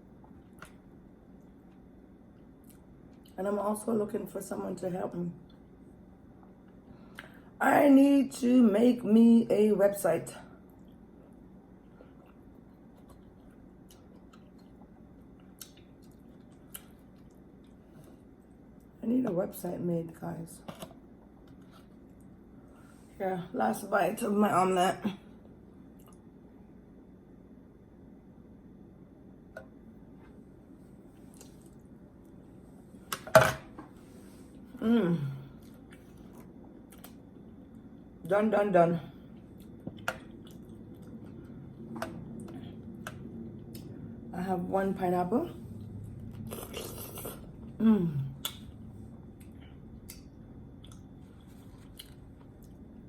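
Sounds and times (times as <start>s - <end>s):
quiet chewing: 10.6s - 19.0s, 25.9s - 26.3s, 31.1s - 32.4s, 35.5s - 37.9s, 39.2s - 44.0s, 45.8s - 53.0s
person humming: 34.8s - 35.4s, 47.8s - 48.4s.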